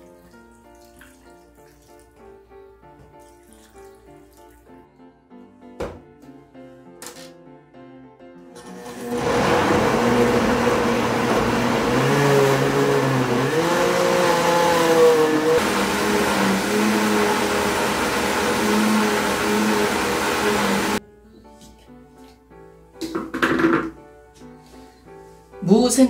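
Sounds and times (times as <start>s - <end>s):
electric blender running: 8.6s - 21.0s.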